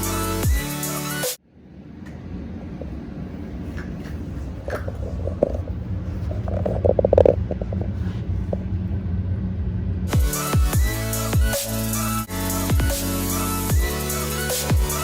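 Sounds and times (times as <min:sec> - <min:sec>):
dubstep electronic music: 0:00.0 - 0:01.4, 0:10.1 - 0:15.0
low rumbling hum: 0:01.4 - 0:15.0.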